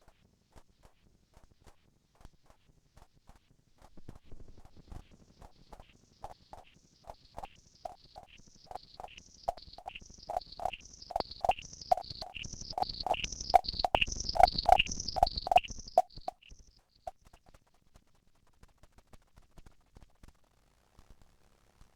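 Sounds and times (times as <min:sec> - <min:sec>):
clicky synth pulses with chirps: 0:07.1 - 0:17.2.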